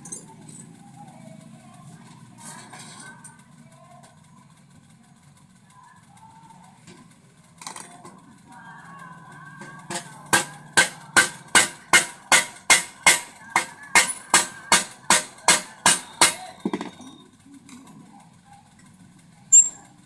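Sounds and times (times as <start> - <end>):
hammer striking metal: 9.6 - 17.0.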